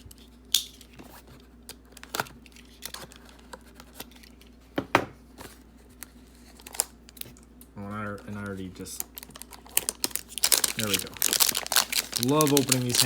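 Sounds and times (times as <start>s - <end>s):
cardboard tearing: 9.2s - 13.0s.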